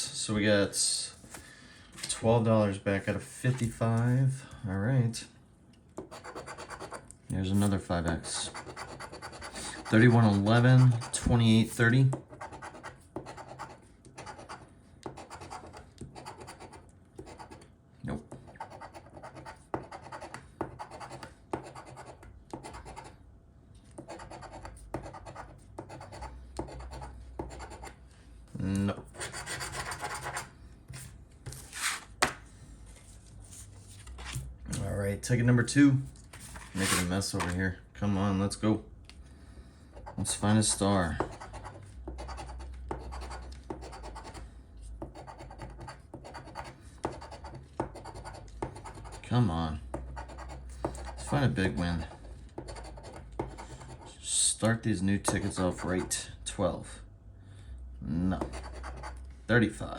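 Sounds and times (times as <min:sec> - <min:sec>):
scratching lottery ticket: 0:06.1 - 0:11.7.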